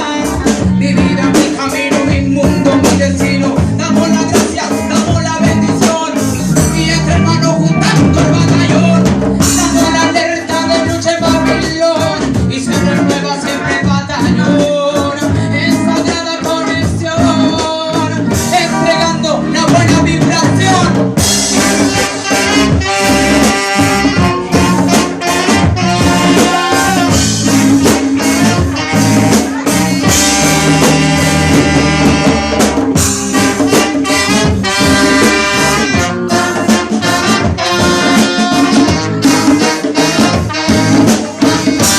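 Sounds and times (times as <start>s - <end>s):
upbeat ska music with horns: 0.0s - 41.9s.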